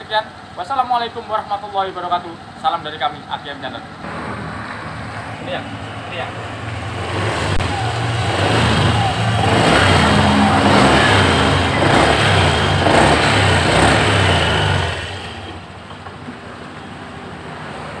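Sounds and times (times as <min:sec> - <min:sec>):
scooter engine running: 0:04.0 - 0:17.3.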